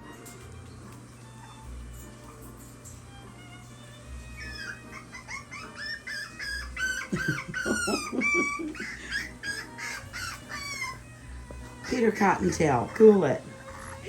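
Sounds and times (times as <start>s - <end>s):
puppy whining: 3.4s - 14.0s
puppy yelping: 4.2s - 11.1s, 11.8s - 14.0s.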